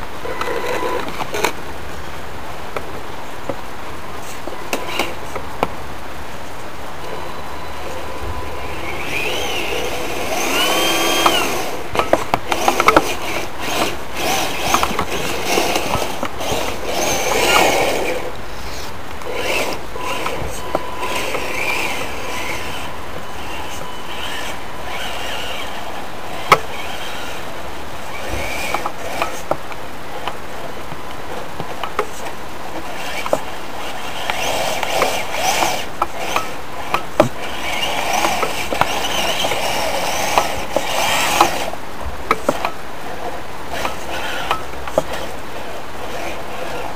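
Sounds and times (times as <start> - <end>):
electric motor whining: 7.0 - 29.5, 32.7 - 42.7
drivetrain clicking and rattling: 9.0 - 18.3, 28.1 - 46.9.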